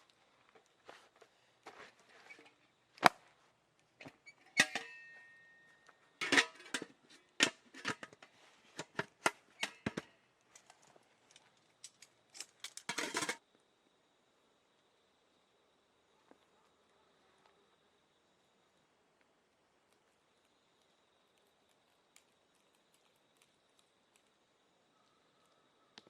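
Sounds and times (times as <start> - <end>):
clicks and knocks of objects handled: 3.8 - 13.4, 19.8 - 24.4
short metallic ring: 4.6 - 5.8.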